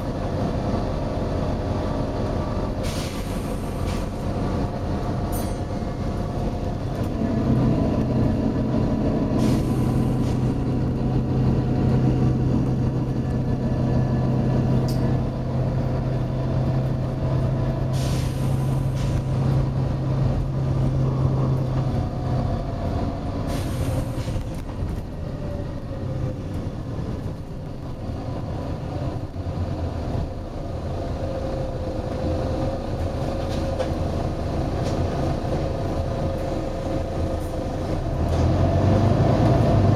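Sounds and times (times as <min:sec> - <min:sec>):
bus engine droning: 0:00.0 - 0:39.9
compressed air hissing: 0:02.8 - 0:04.3, 0:09.4 - 0:10.5, 0:17.9 - 0:19.4.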